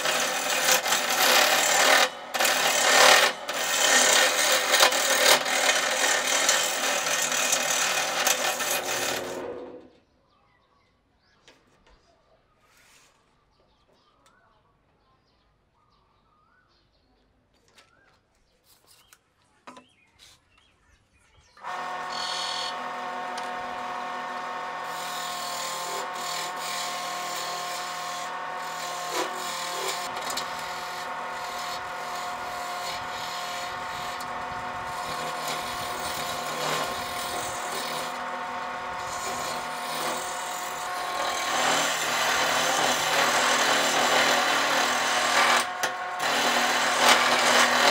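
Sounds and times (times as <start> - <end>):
power tool grinding wood: 0.0 - 9.9, 21.6 - 47.9.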